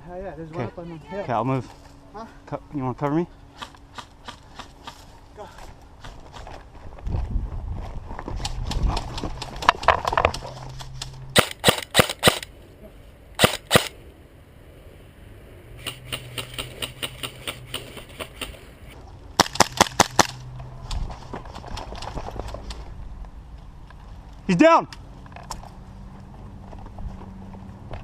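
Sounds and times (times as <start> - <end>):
airsoft rifles firing bursts: 11.4 - 12.5, 13.4 - 13.9, 15.8 - 18.7.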